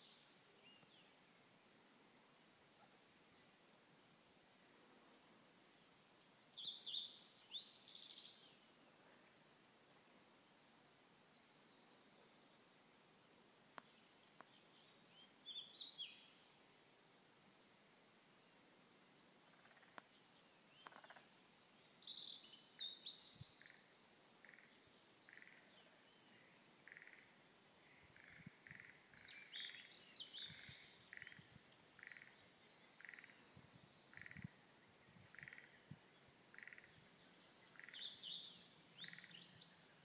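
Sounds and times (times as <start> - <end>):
short lower bird calls: 26.8 - 34.6, 35.3 - 35.9, 36.5 - 40.0
bird singing high warbled phrases: 28.2 - 34.5, 35.3 - 40.0.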